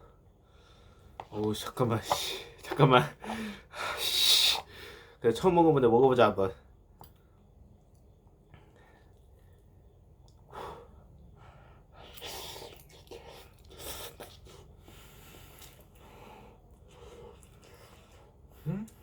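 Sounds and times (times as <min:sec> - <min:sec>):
person eating noodles: 0:12.0 - 0:16.0.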